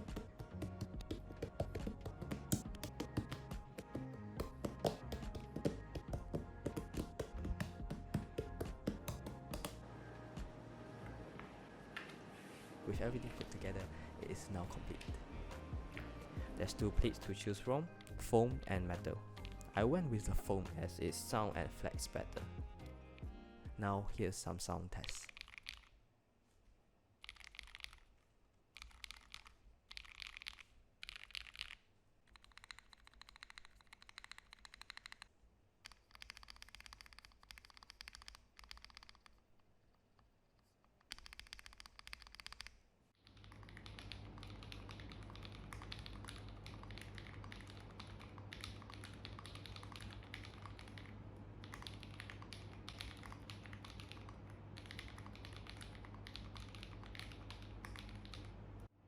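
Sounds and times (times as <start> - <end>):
fast typing: 0.0 - 9.8, 25.0 - 25.9, 27.2 - 28.1, 28.8 - 39.5, 41.0 - 58.6
mechanical keyboard clicks: 25.0 - 25.9, 27.2 - 28.1, 28.8 - 39.4, 41.0 - 58.6
faint steady hum: 43.2 - 59.0.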